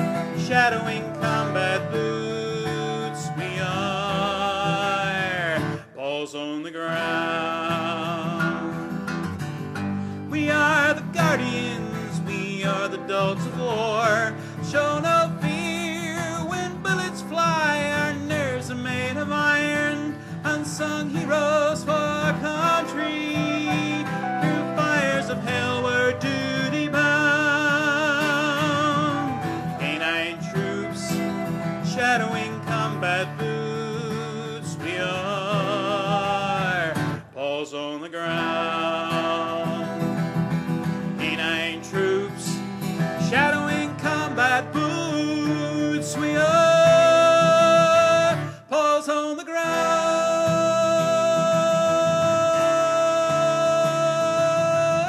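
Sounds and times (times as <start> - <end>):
lead melody with sliding notes: 0.0 - 4.8, 21.4 - 33.7
acoustic guitar: 0.0 - 55.0.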